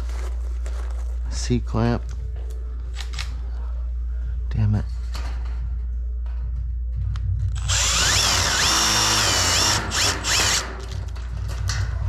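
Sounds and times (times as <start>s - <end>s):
power drill driving screw: 7.6s - 11.0s.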